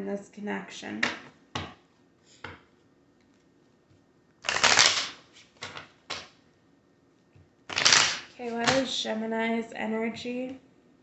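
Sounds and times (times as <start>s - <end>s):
cards being shuffled: 4.4s - 6.4s, 7.7s - 8.9s.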